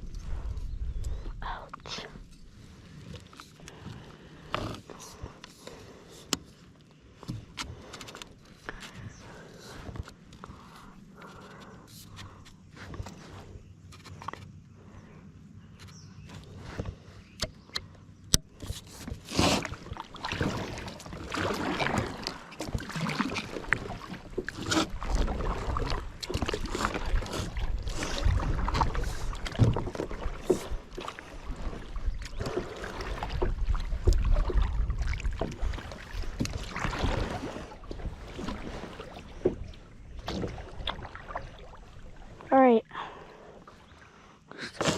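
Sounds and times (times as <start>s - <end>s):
wind rumbling on microphone: 0.0s - 5.4s, 18.6s - 42.5s.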